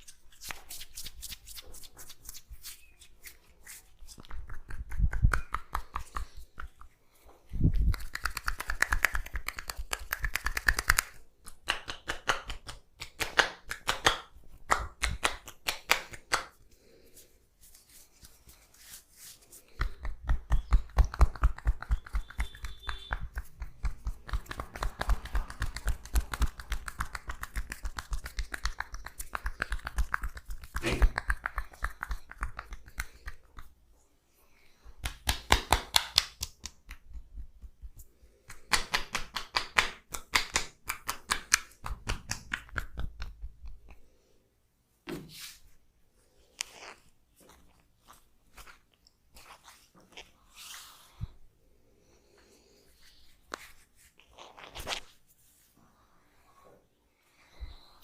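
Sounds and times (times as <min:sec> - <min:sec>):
hands tapping on skin: 0:04.1 - 0:07.0, 0:07.7 - 0:16.6, 0:19.6 - 0:33.7, 0:35.0 - 0:44.0.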